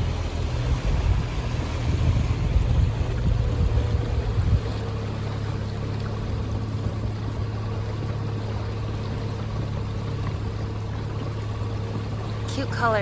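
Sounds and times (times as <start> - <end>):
outboard motor running: 0.0 - 13.0
water washing along hull: 0.0 - 13.0.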